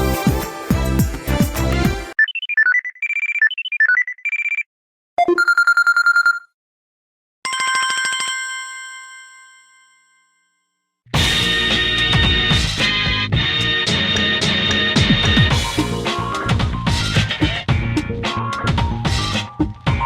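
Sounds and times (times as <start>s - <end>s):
electronic beep melody: 5.2s - 6.5s
music ringtone: 5.2s - 6.5s
bell-like chime: 7.5s - 10.7s.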